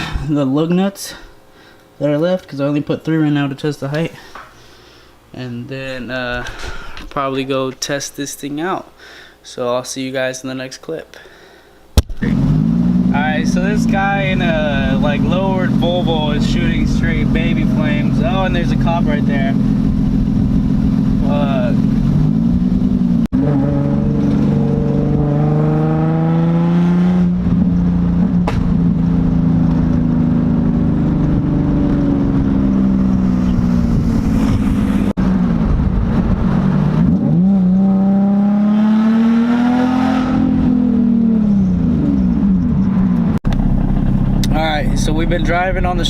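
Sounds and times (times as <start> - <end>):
car engine accelerating: 12.2 - 46.0.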